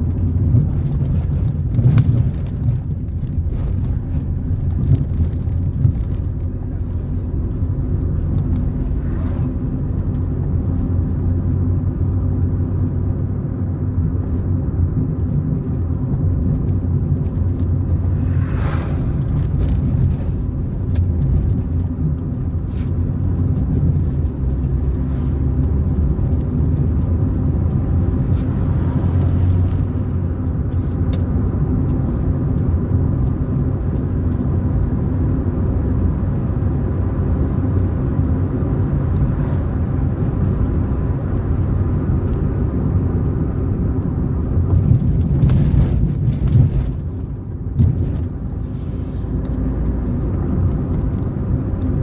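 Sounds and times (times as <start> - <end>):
car engine hum: 0.0 - 52.0
road rumble: 0.0 - 52.0
rush of noise: 17.6 - 20.6.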